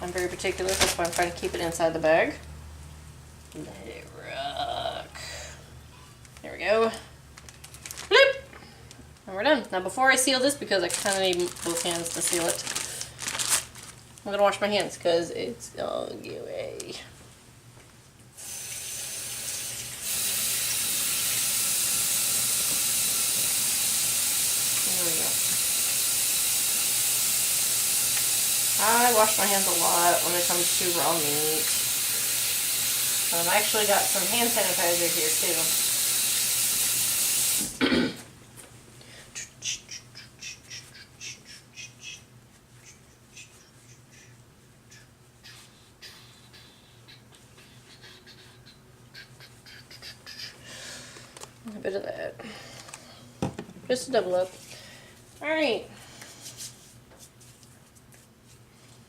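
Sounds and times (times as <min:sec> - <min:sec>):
tap water running into sink: 0:18.7 - 0:29.6
hands rubbing together: 0:39.6 - 0:44.3.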